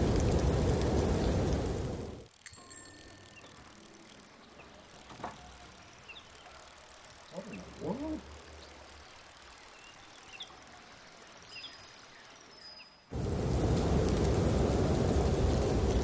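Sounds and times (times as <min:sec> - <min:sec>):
faint bird chirps: 0:03.0 - 0:13.1
loud steady rushing noise: 0:13.1 - 0:16.0.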